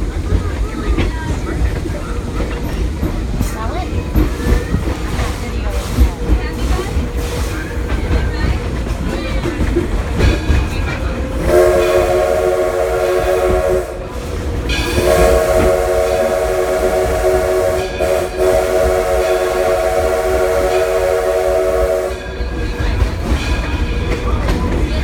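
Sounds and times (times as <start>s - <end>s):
train rumbling: 0.0s - 25.0s
steam locomotive whistle: 11.3s - 22.4s.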